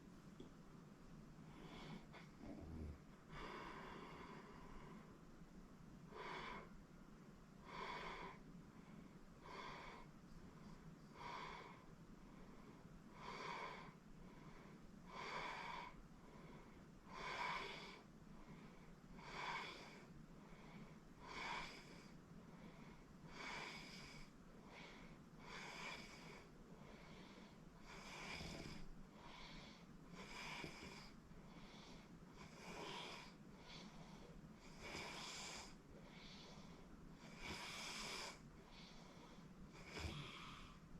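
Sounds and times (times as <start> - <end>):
low steady hum: 0.0 - 40.9
person snoring softly: 1.5 - 5.1, 13.1 - 18.1, 19.2 - 20.1, 20.7 - 22.2, 22.9 - 40.9.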